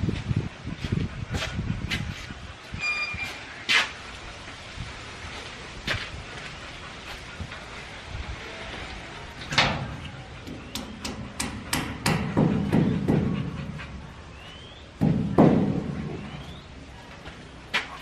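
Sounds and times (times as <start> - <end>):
sharp knocks and taps: 10.4 - 13.6.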